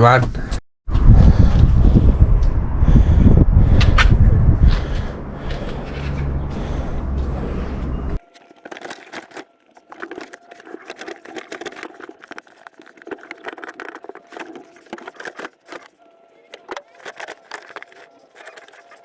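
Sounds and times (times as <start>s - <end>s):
loud low hum: 0.9s - 8.2s.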